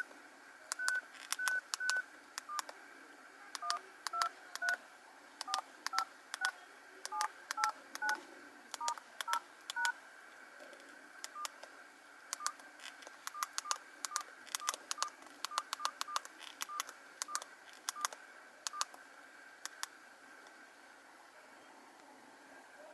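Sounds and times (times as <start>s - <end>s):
two-tone keypad beeps: 0.8s - 2.6s.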